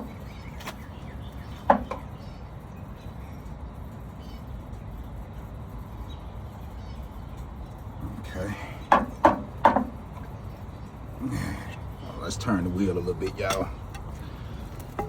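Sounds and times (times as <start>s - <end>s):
low outdoor rumble: 9.9s - 15.0s
hand tool knocking on metal: 13.1s - 15.0s.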